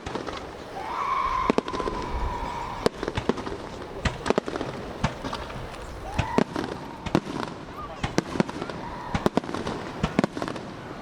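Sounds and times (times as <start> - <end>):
fireworks bangs and cracks: 0.0 - 0.7, 1.4 - 11.0
high firework whistle: 0.7 - 3.6, 6.0 - 10.6.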